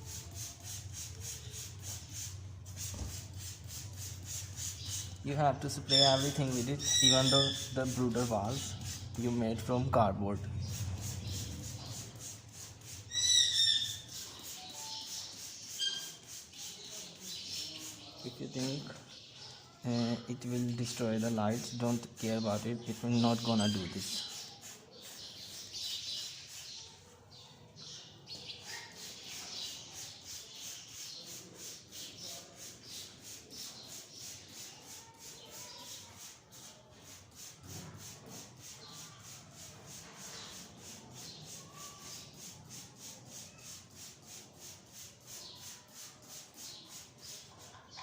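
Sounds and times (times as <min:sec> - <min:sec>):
spray bottle hissing sprays: 0:00.0 - 0:09.7, 0:10.6 - 0:19.0, 0:20.4 - 0:27.1, 0:27.8 - 0:48.0.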